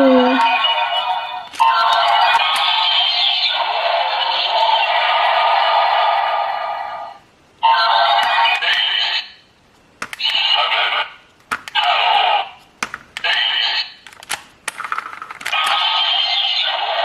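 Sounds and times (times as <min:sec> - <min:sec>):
toy electronic sound effects: 0:15.5 - 0:17.0.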